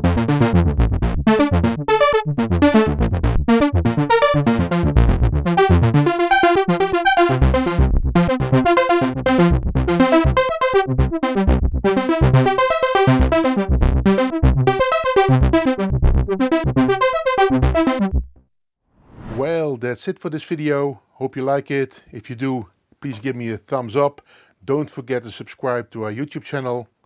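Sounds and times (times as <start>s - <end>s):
pulsing low synth notes: 0.0s - 18.4s
synthesizer arpeggio: 0.0s - 18.4s.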